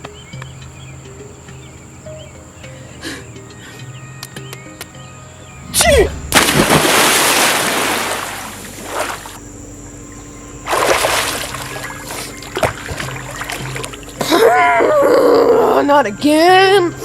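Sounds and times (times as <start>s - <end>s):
body splashing into water: 5.7s - 9.4s, 10.7s - 14.5s.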